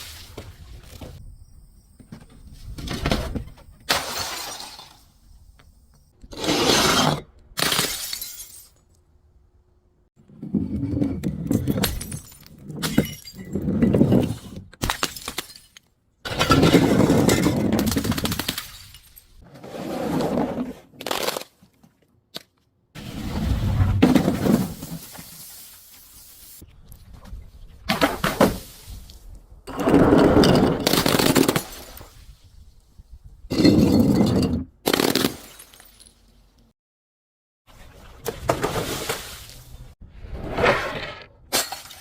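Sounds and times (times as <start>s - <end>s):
objects crushed and breaking: 11.5s - 19.4s.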